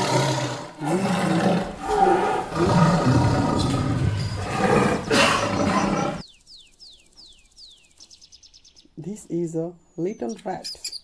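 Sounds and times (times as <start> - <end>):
tiger roaring and growling: 0.0 - 6.2.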